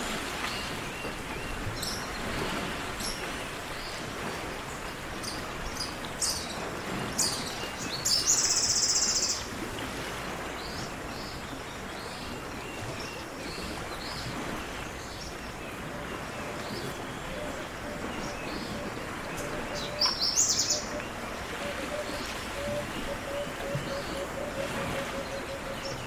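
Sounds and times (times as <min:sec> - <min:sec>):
songbirds chirping: 0:10.6 - 0:26.0.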